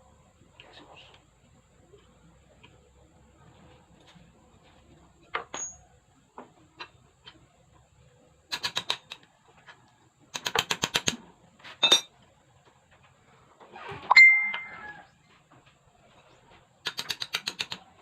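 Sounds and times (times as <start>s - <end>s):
metal tools clicking and clinking: 5.4s - 5.8s, 11.8s - 12.1s
ringing metallic clink: 14.1s - 14.8s.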